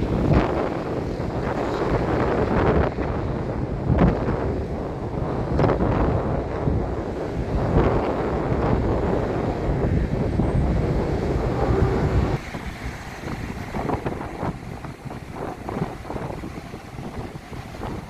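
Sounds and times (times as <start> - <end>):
wind buffeting microphone: 0.0 - 18.0
waves breaking: 3.9 - 18.0.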